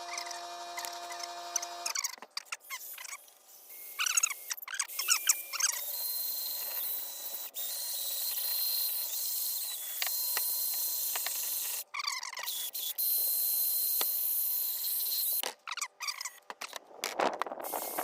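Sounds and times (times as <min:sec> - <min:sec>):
electric polisher whining: 0:00.0 - 0:02.0.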